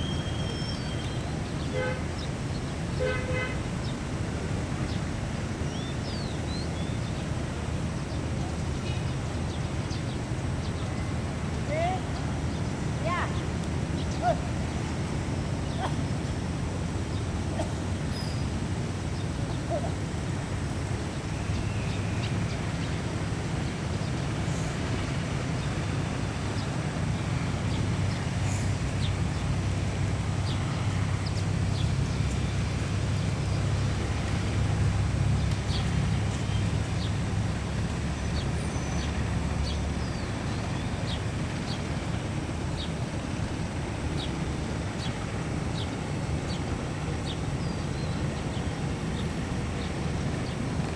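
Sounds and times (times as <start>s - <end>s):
low engine rumble: 18.6s - 50.9s.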